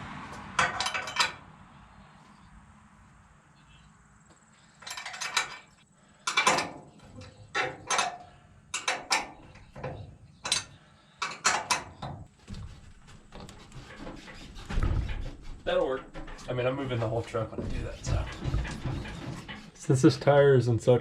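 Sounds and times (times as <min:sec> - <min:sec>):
spare tire clanking and rattling: 0:00.3 - 0:01.5, 0:04.6 - 0:20.2.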